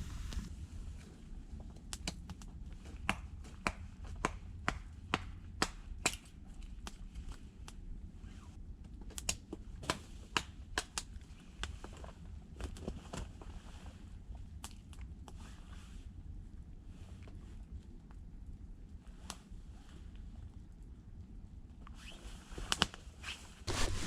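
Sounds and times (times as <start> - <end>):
low steady rumble: 0.0 - 24.0
wood fire crackling and popping: 1.7 - 7.0.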